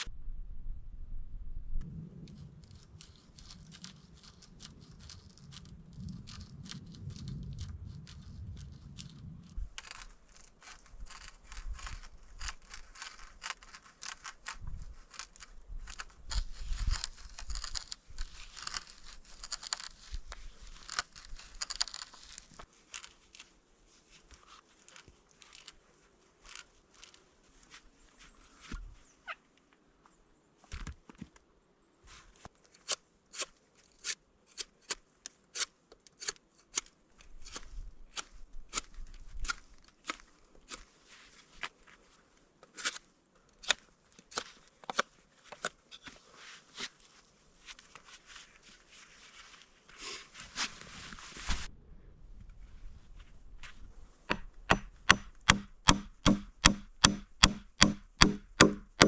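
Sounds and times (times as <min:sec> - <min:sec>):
low rumble: 0:00.0 - 0:09.8
crackling and rustling: 0:01.8 - 0:32.9, 0:37.2 - 0:51.7.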